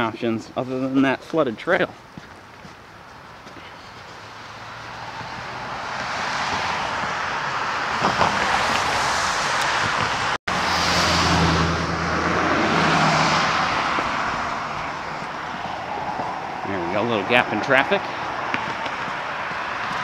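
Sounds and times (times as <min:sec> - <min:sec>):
cars passing by: 0:00.0 - 0:20.0
deep vehicle engine hum: 0:06.8 - 0:20.0.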